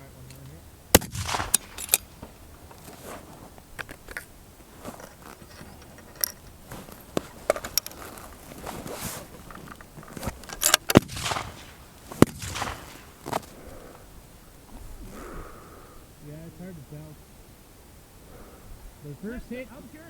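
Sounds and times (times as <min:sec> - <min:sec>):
sharp loud cracks: 0:00.9 - 0:03.2, 0:10.3 - 0:14.1
gear clicks rattles and scrapes: 0:01.3 - 0:02.2, 0:03.8 - 0:11.7.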